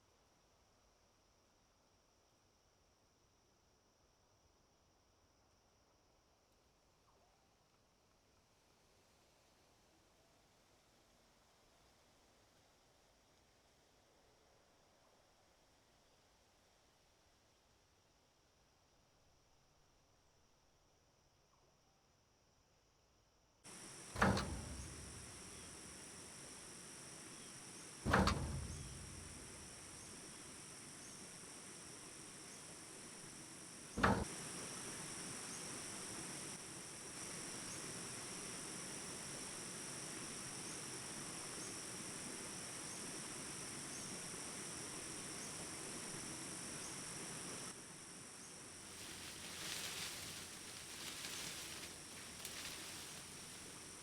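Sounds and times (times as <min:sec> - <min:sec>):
loud thumps: 0:23.7 - 0:30.2
insect chorus trilling: 0:23.7 - 0:54.0.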